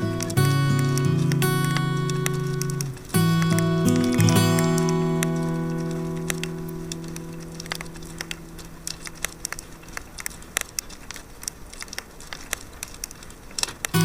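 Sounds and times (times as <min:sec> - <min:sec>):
acoustic guitar chord: 0:00.0 - 0:09.3
campfire crackling and popping: 0:00.0 - 0:14.0.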